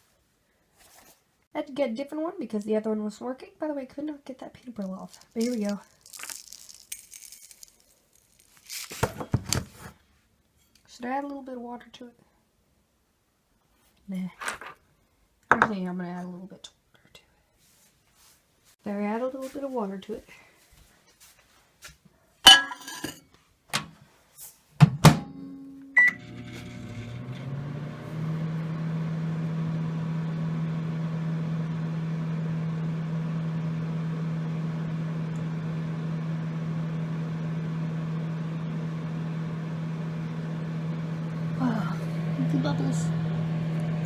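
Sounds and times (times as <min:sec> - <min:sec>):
microwave humming: 0:25.0 - 0:44.0.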